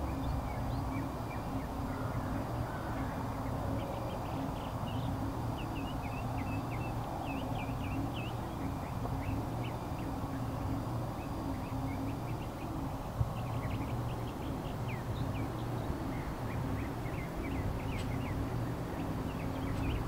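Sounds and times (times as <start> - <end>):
small birds chirping: 0.0 - 20.0
steady low rumble: 0.0 - 20.0.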